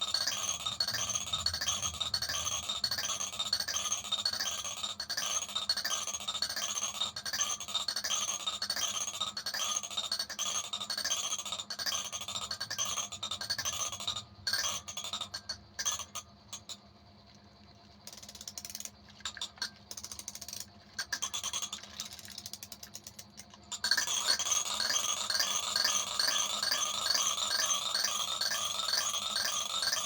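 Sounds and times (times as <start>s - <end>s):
clicks and rattling: 14.5s - 24.5s.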